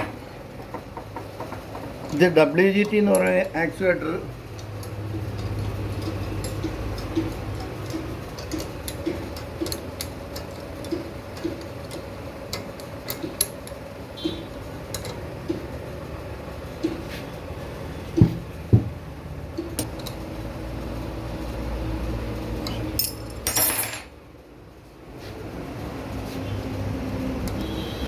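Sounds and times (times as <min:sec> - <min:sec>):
metal parts and tools clicking: 0:02.0 - 0:13.8, 0:14.9 - 0:15.2, 0:22.6 - 0:24.1.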